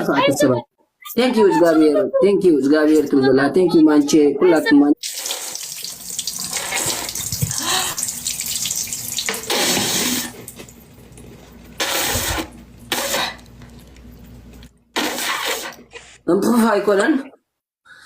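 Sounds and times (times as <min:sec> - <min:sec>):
tap water running: 0:05.0 - 0:14.8.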